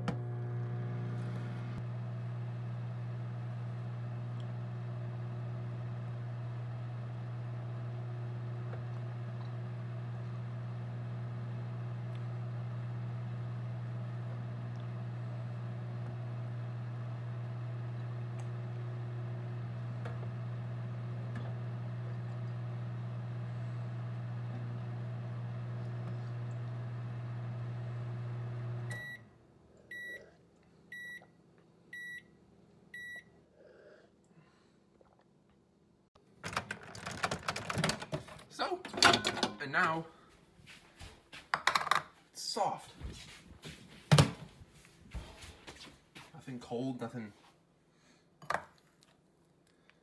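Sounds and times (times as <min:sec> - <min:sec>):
microwave oven humming: 0:00.0 - 0:30.3.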